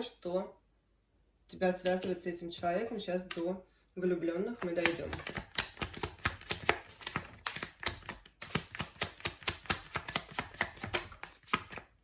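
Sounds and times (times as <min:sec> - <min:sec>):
cards being shuffled: 0:04.5 - 0:12.0.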